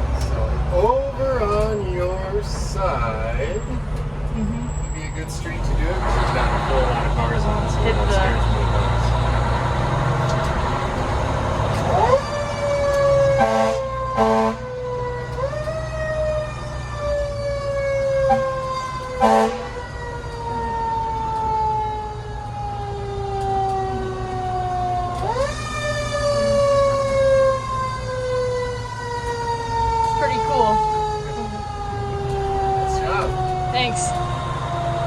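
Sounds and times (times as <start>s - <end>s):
truck engine rumble: 0.0s - 35.0s
mechanical fire truck siren: 10.2s - 35.0s
short horn blasts: 13.4s - 14.6s, 18.3s - 18.6s, 19.2s - 19.8s.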